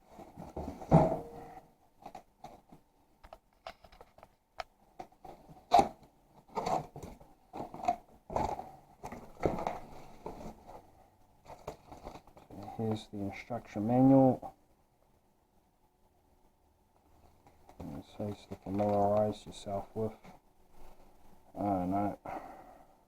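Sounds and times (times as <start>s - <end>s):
cardboard packaging crinkling: 11.4s - 12.6s, 17.4s - 19.6s.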